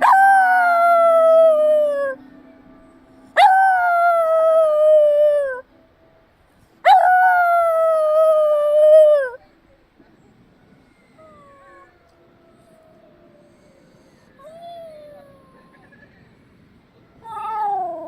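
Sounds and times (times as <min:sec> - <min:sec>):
dog howling: 0:00.0 - 0:02.2, 0:03.4 - 0:05.6, 0:06.8 - 0:09.4, 0:10.7 - 0:15.9, 0:17.2 - 0:18.0.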